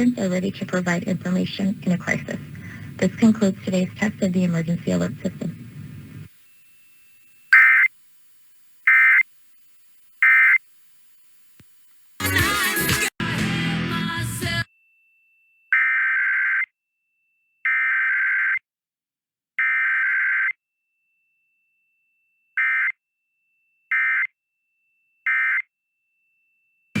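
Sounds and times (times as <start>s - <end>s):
buzzy digital data bursts: 0.0s - 13.0s.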